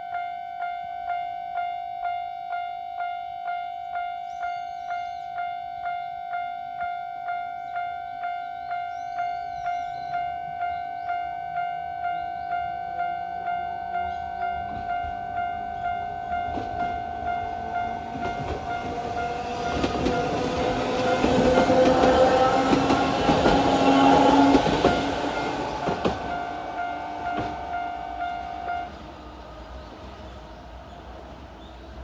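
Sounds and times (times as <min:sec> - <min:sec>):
crossing warning bell ringing: 0:00.0 - 0:31.1
train rumbling past: 0:12.5 - 0:32.0
train wheel clacks: 0:14.1 - 0:31.8.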